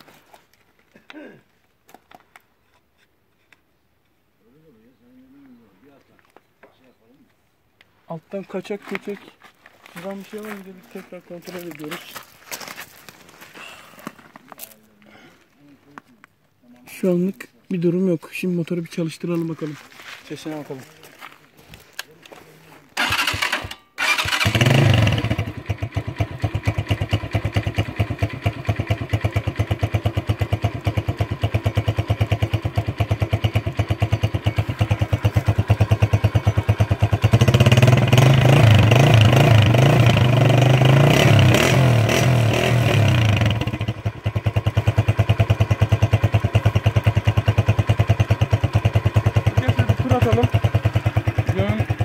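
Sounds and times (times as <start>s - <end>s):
motorcycle engine idling and revving: 23.0s - 52.0s.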